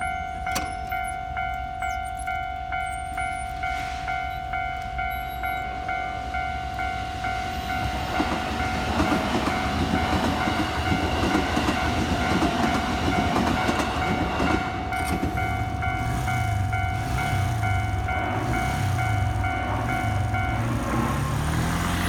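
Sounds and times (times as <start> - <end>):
level crossing bell ringing: 0.0 - 11.2
train rumbling past: 0.0 - 22.0.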